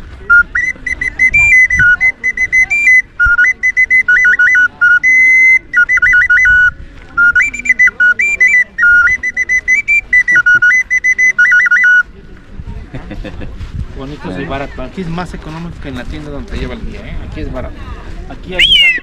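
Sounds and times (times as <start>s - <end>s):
high whistling flute tune: 0.4s - 12.0s, 18.6s - 19.0s.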